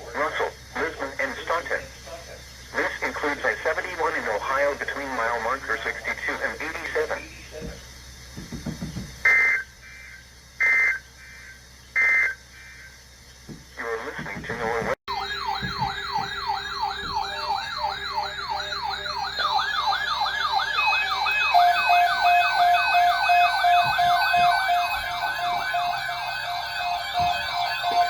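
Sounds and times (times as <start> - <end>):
electronic siren yelping: 9.2 - 13.0, 15.1 - 28.0
second siren: 15.1 - 28.0
steady pulsing tone: 15.1 - 28.0.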